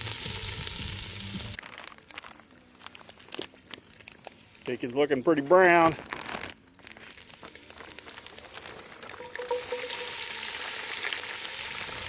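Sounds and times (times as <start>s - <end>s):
bacon sizzling: 0.0s - 12.0s.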